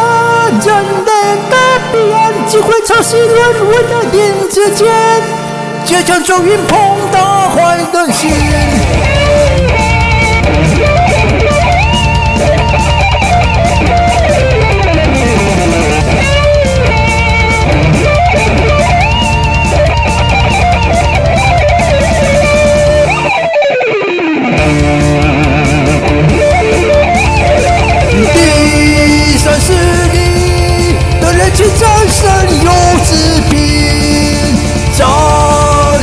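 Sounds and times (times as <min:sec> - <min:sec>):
electric guitar solo: 0:00.0 - 0:36.0
rock bass and drums: 0:08.3 - 0:36.0.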